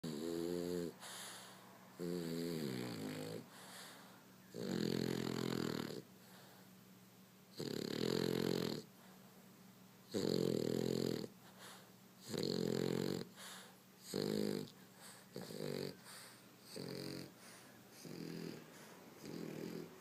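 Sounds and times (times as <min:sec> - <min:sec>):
dog snoring loudly: 0:00.0 - 0:03.9, 0:04.5 - 0:06.1, 0:07.5 - 0:08.9, 0:10.1 - 0:11.4, 0:12.2 - 0:17.4, 0:18.0 - 0:20.0
quiet breaths: 0:00.0 - 0:07.0, 0:07.6 - 0:09.5, 0:10.2 - 0:20.0.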